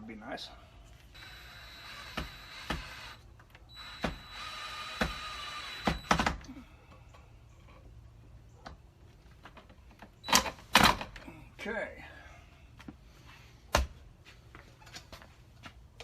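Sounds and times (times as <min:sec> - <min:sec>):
electric drill whining: 0:01.1 - 0:06.5.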